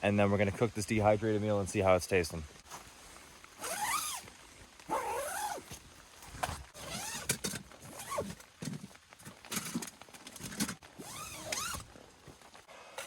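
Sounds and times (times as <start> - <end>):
zipper being pulled: 3.6 - 4.3, 4.9 - 5.8, 6.4 - 8.8, 10.5 - 11.9.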